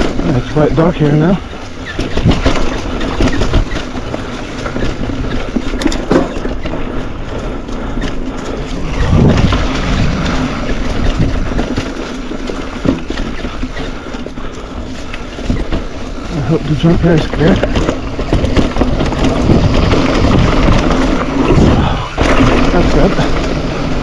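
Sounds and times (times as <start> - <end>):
bike rumbling over rough ground: 0.0 - 24.0
wind rushing over microphone: 8.4 - 12.4, 16.3 - 24.0.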